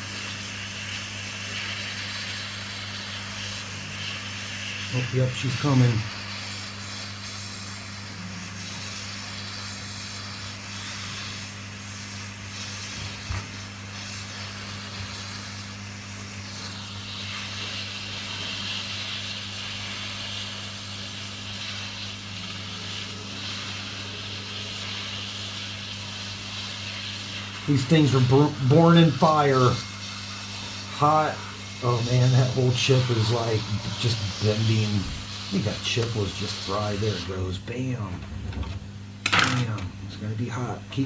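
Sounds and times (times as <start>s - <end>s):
hot air blower hissing: 0.0s - 41.0s
low even hum: 37.2s - 41.0s.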